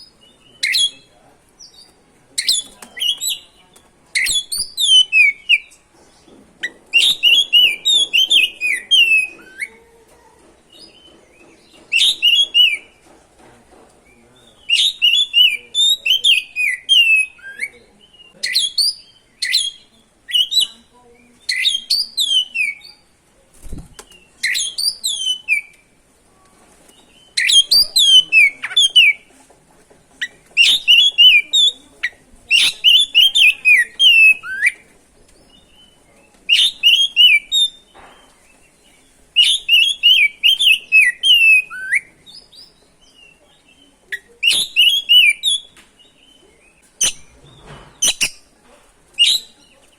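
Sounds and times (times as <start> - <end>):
bird singing whistled phrases: 21.4 - 23.0, 36.5 - 37.8, 39.4 - 43.4, 44.2 - 47.3, 49.2 - 49.7.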